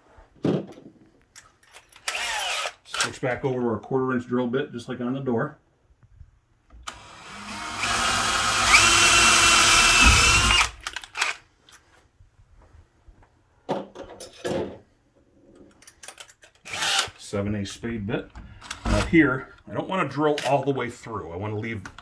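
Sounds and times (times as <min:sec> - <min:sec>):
cordless drill drilling into wood: 0:02.1 - 0:02.8, 0:06.9 - 0:11.3.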